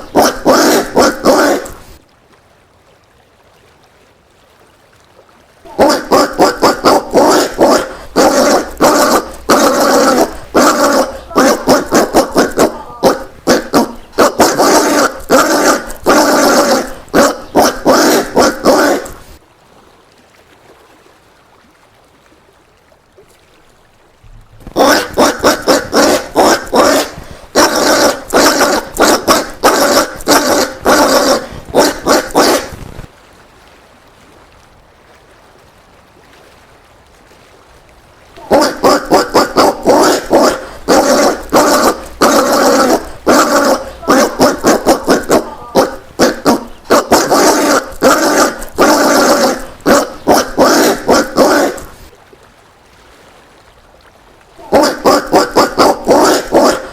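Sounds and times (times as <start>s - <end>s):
peccary barking grunts: 0.0s - 1.9s, 5.7s - 19.4s, 24.7s - 32.8s, 38.4s - 52.1s, 54.6s - 56.9s.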